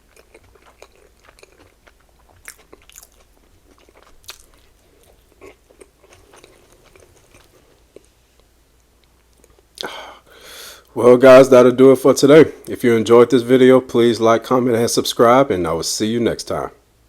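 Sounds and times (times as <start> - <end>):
person chewing and smacking: 0.0 - 9.9.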